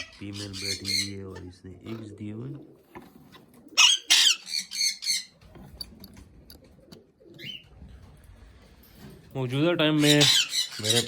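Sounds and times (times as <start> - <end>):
parrot chirp: 0.0 - 1.2, 3.8 - 5.4, 10.0 - 11.0
parrot squawking: 0.0 - 1.4, 3.8 - 5.4, 10.0 - 11.0.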